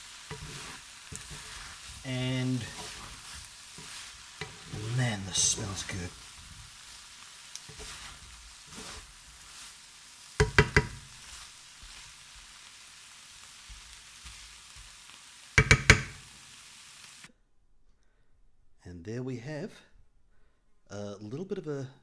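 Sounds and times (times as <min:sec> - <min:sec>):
sauce sizzling in a frying pan: 0:00.0 - 0:17.3
utensil knocking against pan: 0:00.3 - 0:01.7, 0:10.4 - 0:11.2, 0:15.6 - 0:16.3.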